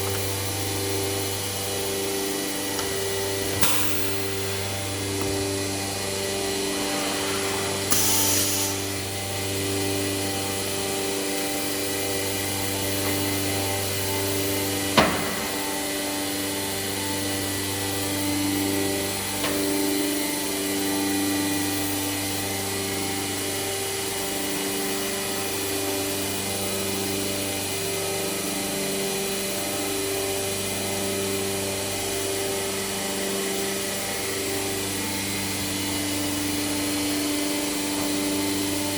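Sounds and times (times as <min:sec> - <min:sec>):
machining centre humming: 0:00.0 - 0:29.8
short hiss: 0:07.0 - 0:08.9
sharp knock: 0:15.0 - 0:15.8.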